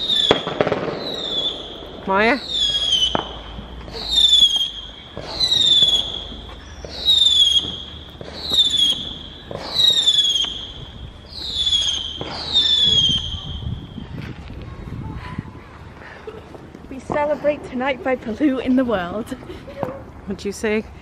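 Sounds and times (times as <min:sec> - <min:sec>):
whistling fireworks: 0:00.0 - 0:14.8.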